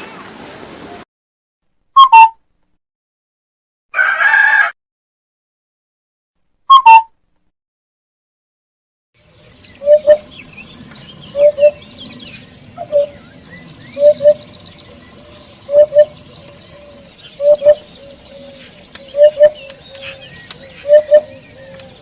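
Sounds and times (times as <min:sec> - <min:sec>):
small birds chirping: 0:09.2 - 0:22.0.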